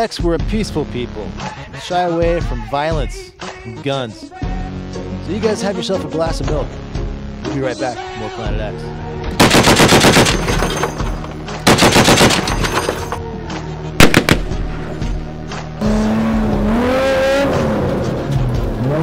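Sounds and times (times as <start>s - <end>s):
machine gun firing: 9.4s - 11.0s, 11.7s - 13.2s, 14.0s - 14.6s
truck engine revving: 14.4s - 19.0s.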